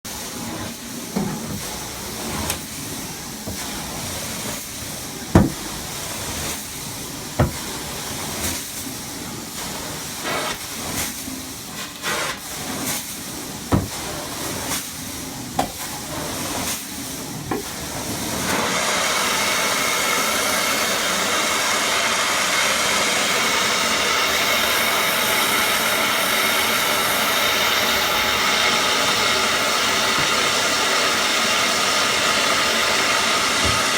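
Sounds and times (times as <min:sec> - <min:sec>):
steam cleaner hissing: 0:00.1 - 0:33.9
knocks and clicks: 0:05.4 - 0:05.8.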